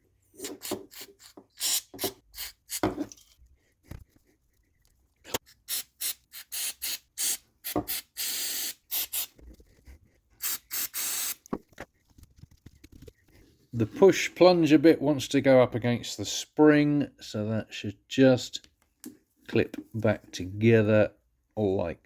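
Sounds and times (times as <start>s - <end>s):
aerosol spray spurts: 10.4s - 11.5s.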